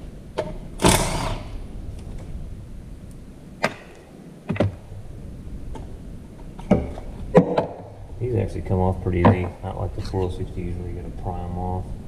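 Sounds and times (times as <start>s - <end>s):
tools knocking on parts: 9.2s - 9.6s.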